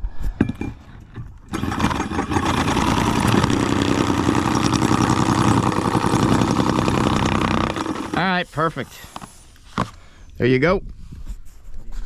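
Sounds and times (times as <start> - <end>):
power tool running: 1.5 - 10.1.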